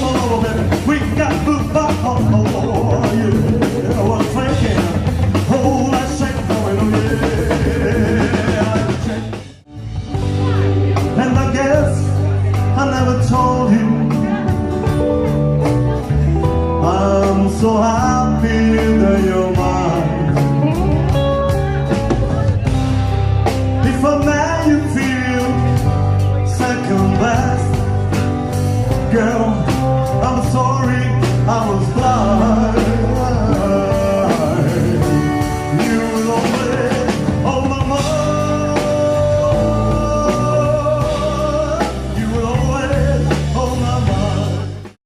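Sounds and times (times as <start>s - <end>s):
rock and roll band playing: 0.0s - 45.0s.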